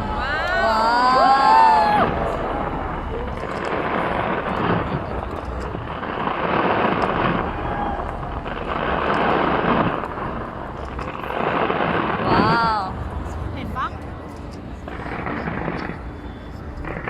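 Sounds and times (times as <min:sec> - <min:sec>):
fireworks barrage rumble: 0:00.0 - 0:17.0
faint crackles: 0:02.1 - 0:13.3.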